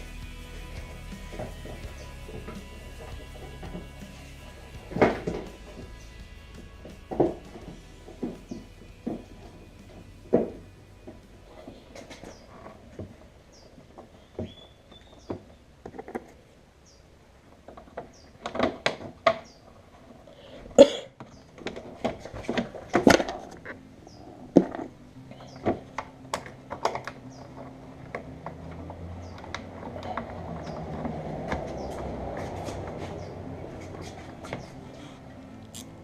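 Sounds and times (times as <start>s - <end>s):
low hum with held tones: 0.0s - 15.9s
plastic parts clicking and knocking: 17.6s - 19.5s.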